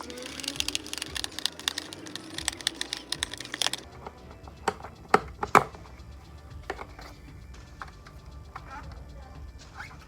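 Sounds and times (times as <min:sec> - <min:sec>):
packaging crackling: 0:00.0 - 0:03.9.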